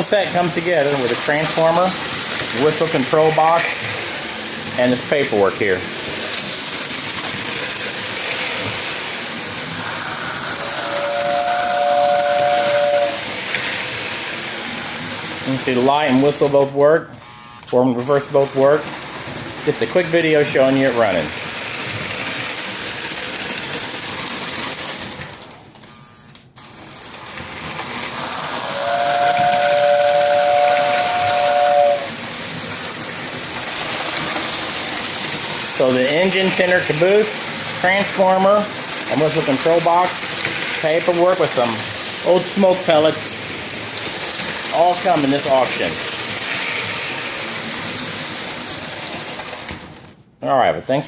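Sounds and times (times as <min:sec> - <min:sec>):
toy train whirring hiss: 0:00.0 - 0:16.5, 0:18.0 - 0:25.6, 0:26.7 - 0:50.2
two-note train whistle: 0:09.8 - 0:13.4, 0:28.6 - 0:32.2.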